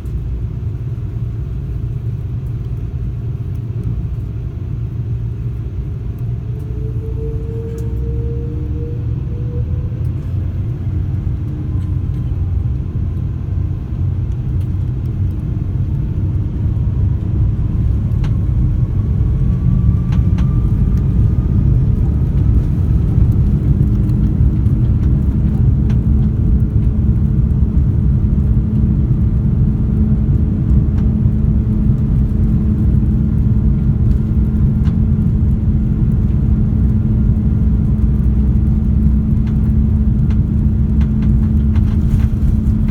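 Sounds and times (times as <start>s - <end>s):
jet engines deep rumble: 0.0s - 42.9s
rising engine whine: 0.0s - 42.9s
steady hum: 0.0s - 42.9s.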